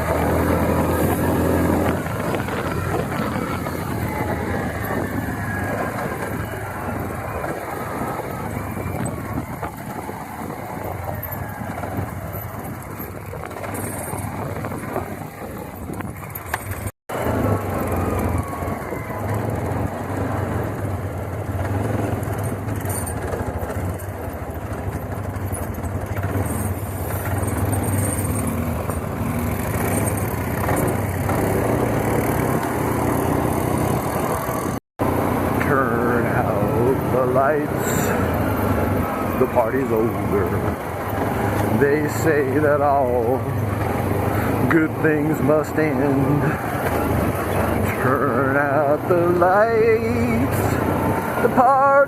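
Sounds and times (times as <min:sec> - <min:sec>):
dense rushing noise: 0:00.0 - 0:22.8
atv engine running: 0:00.0 - 0:52.0.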